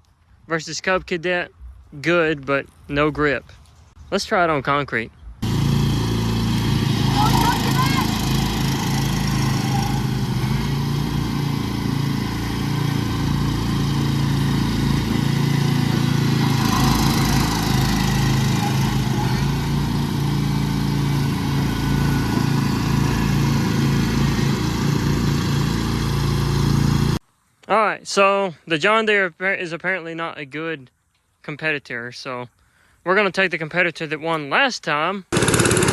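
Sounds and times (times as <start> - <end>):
lawn tractor engines under load: 5.4 - 27.2, 35.3 - 35.9.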